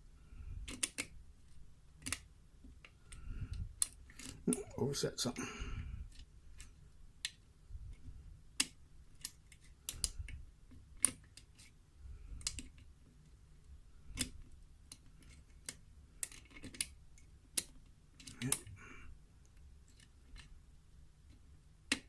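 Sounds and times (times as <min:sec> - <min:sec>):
lock pick clicking in a lock: 0:00.7 - 0:01.1.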